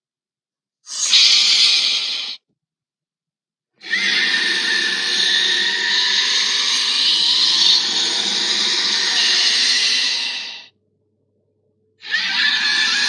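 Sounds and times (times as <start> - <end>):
harsh creature sound effect: 3.9 - 10.6.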